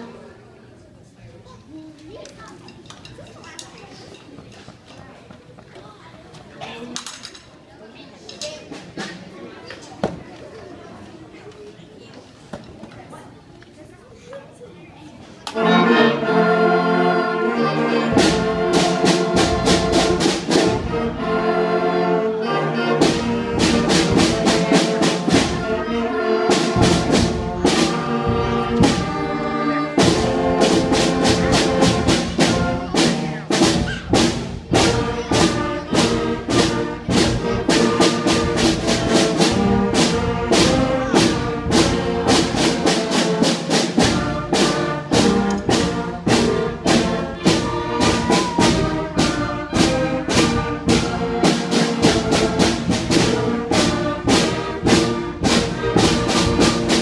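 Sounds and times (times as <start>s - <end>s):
trumpets and trombones playing: 15.6s - 57.0s
steady drum beat: 18.0s - 21.6s, 22.5s - 57.0s.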